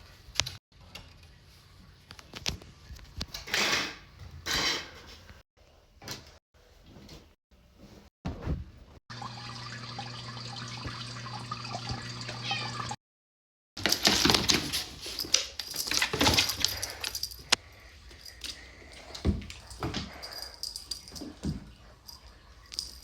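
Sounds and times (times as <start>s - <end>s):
household objects clattering: 13.8s - 17.6s.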